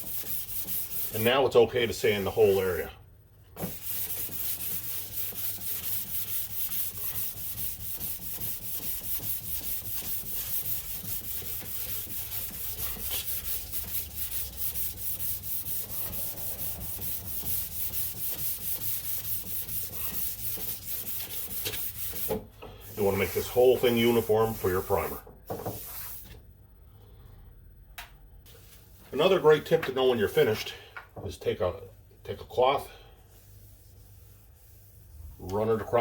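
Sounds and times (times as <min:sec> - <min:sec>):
sandpaper sanding metal panel: 0:00.0 - 0:02.7, 0:03.6 - 0:26.2.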